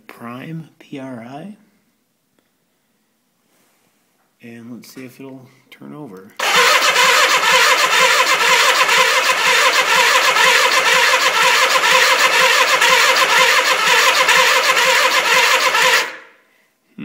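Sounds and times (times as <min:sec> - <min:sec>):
engine cranking on starter: 0:06.4 - 0:16.3.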